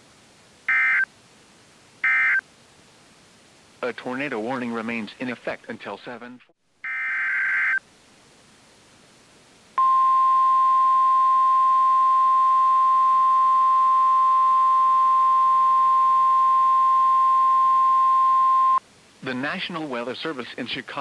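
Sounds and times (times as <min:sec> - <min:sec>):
faint hiss: 0:00.0 - 0:06.9, 0:07.5 - 0:15.4, 0:18.8 - 0:21.0
buzzy digital data tones: 0:06.8 - 0:07.8
steady warning alarm tone: 0:09.8 - 0:18.8.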